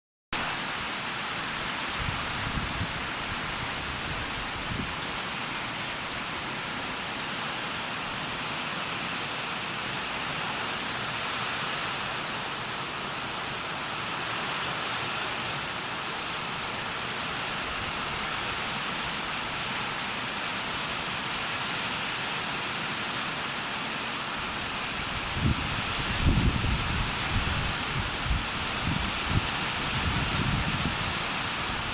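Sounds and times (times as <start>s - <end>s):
heavy rain pouring: 0.4s - 31.9s
wind buffeting microphone: 2.0s - 5.0s, 25.0s - 31.9s.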